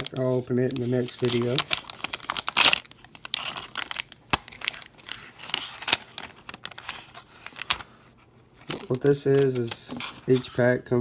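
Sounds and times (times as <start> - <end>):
foil wrapper crinkling: 0.0 - 7.9
foil pack ripping open: 0.7 - 7.8.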